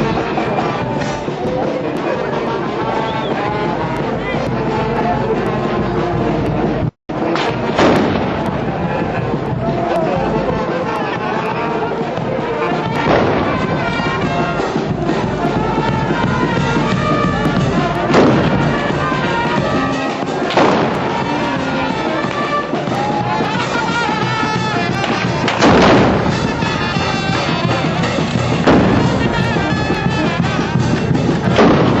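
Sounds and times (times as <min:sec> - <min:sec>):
music playing: 0:00.0 - 0:32.0
rifle blasts: 0:07.4 - 0:08.6, 0:18.1 - 0:19.1, 0:20.5 - 0:21.6, 0:25.0 - 0:27.5, 0:28.3 - 0:30.2, 0:31.5 - 0:32.0.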